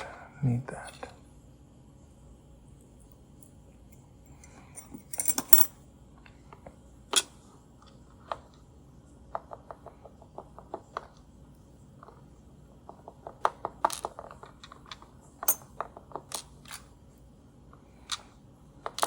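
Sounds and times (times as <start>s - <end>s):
metal lock parts clicking: 4.8s - 5.7s.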